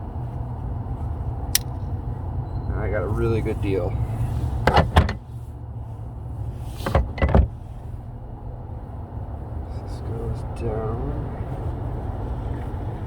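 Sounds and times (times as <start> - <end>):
sharp clicks and knocks: 1.5 - 1.9.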